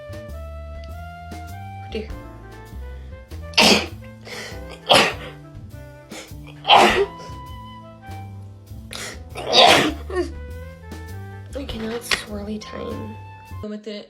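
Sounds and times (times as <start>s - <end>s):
background music with bass line: 0.0s - 13.6s
person sneezing: 3.6s - 5.3s, 6.1s - 7.4s, 8.9s - 10.3s.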